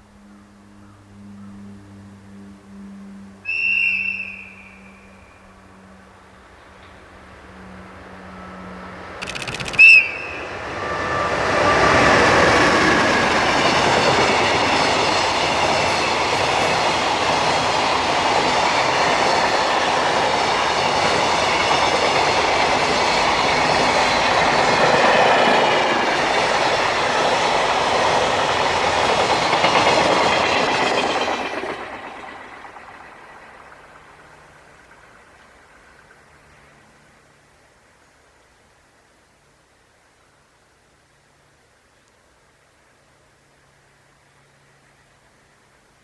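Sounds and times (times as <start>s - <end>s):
train wheel and rail noise: 0.0s - 39.7s
clickety-clack of wagons: 9.2s - 10.1s, 12.1s - 35.0s.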